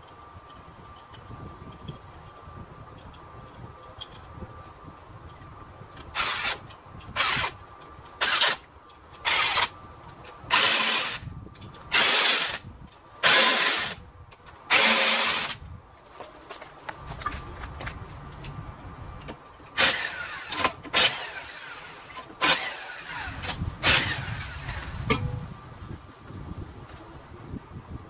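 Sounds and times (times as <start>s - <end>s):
impact wrench bursts: 6.1s - 7.6s, 8.2s - 9.8s, 10.5s - 11.3s, 11.9s - 14.0s, 14.7s - 15.6s, 19.8s - 25.3s.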